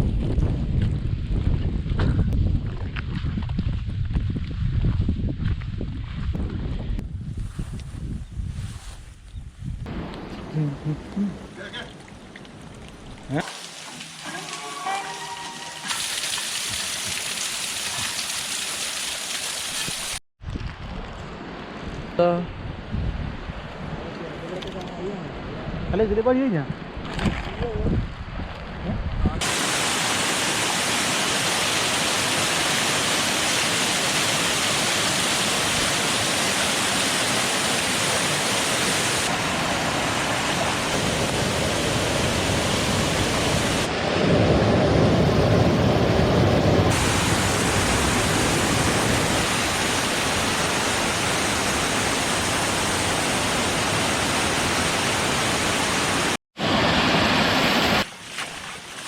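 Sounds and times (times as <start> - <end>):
falling water rushing: 11.3 - 20.2, 29.4 - 44.0, 46.8 - 59.0.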